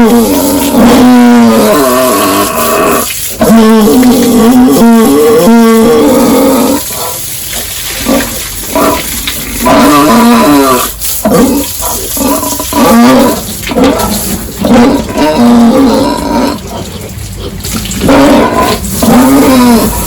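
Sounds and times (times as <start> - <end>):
pigs squealing: 0.0 - 20.0.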